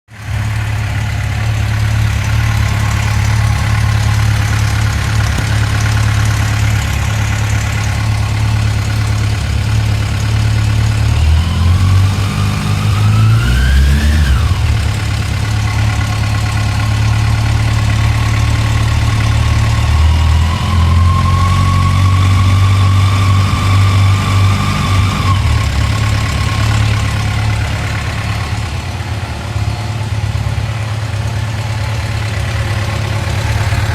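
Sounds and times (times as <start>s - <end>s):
engine ticking at idle: 0.1s - 11.7s, 14.3s - 20.2s, 25.3s - 33.9s
motorcycle engine idling and revving: 0.1s - 33.9s.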